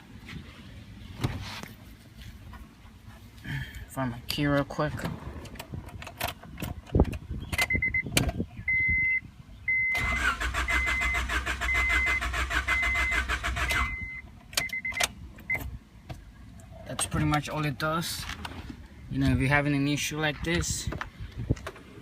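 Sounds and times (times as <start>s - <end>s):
dashboard warning chime beeping: 7.7s - 8.1s, 8.7s - 15.7s
car starter cranking: 9.9s - 15.6s.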